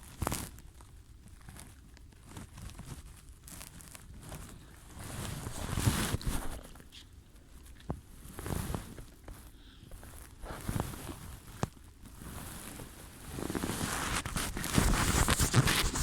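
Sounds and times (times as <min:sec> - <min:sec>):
clothing rustling over microphone: 0:00.0 - 0:16.0
footsteps: 0:14.0 - 0:16.0.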